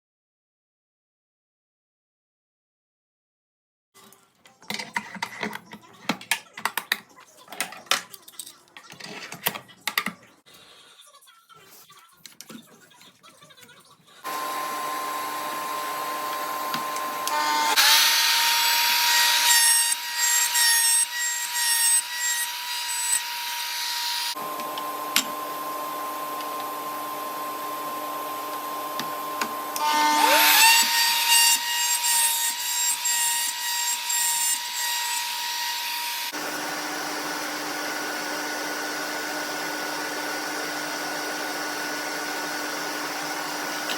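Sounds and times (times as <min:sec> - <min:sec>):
router cutting wood: 0:14.2 - 0:43.9
router motor whine: 0:14.2 - 0:43.9.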